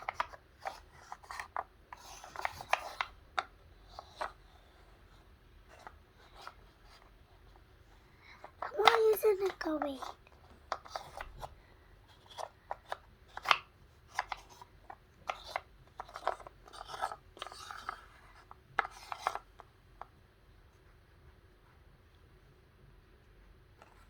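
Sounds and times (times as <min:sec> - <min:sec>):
wooden puzzle pieces clacking: 0:08.4 - 0:11.5, 0:12.1 - 0:18.1.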